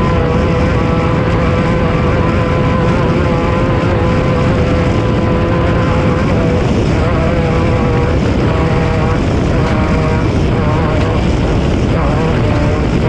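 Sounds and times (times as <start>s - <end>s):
heavy low rumble: 0.0s - 13.0s
race vehicle engine running hard: 0.0s - 13.0s.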